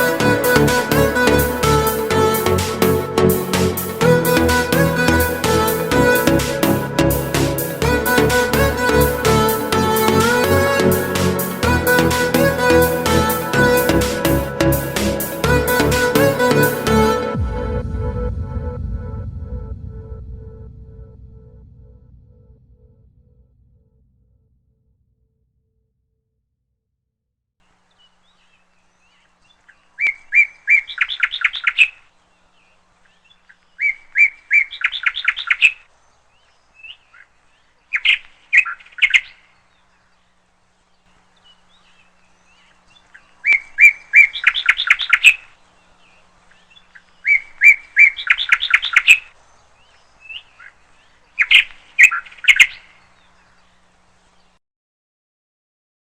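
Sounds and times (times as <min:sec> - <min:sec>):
songbird singing with trill: 0:27.8 - 0:54.6.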